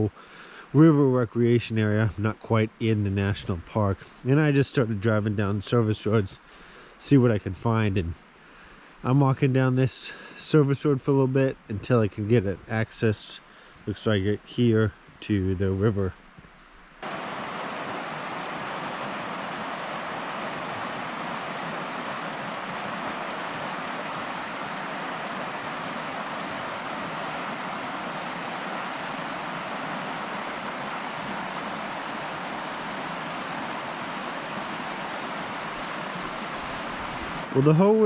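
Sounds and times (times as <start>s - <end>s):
river rushing: 17.0s - 38.0s.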